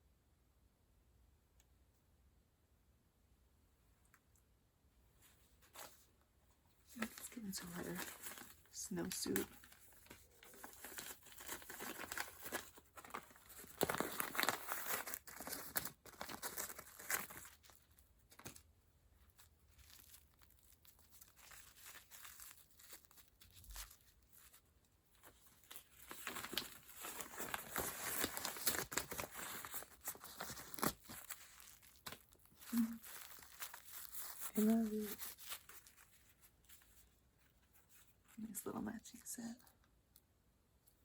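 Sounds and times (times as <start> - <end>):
packaging crinkling and tearing: 6.9 - 37.0.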